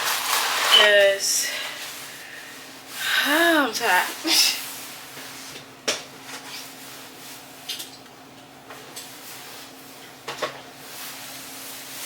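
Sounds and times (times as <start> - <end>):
groceries knocking and clattering: 0.0 - 1.8.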